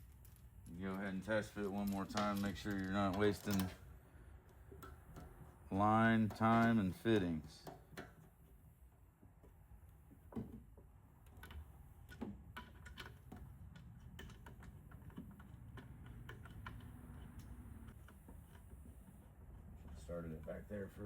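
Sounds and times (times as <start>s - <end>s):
hose fittings clicking and tapping: 0.2s - 3.8s, 4.4s - 8.4s, 10.3s - 18.8s.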